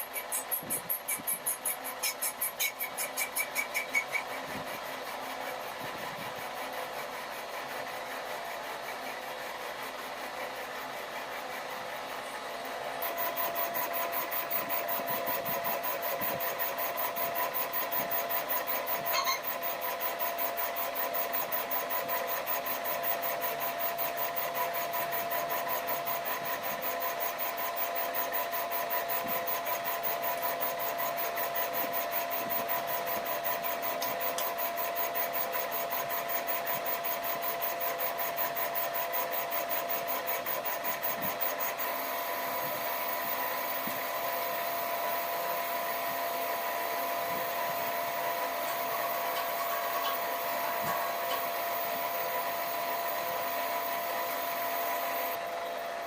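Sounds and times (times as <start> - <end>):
machine tool humming and rasping: 0.0 - 56.0
high squeal: 19.0 - 19.5.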